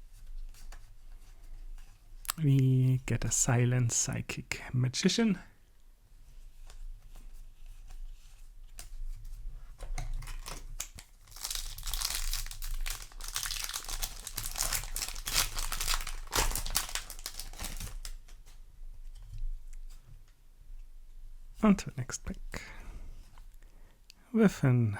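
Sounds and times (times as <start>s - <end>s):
card handling clicks and rustles: 10.0s - 18.6s
foil pack tearing and crinkling: 10.2s - 18.2s.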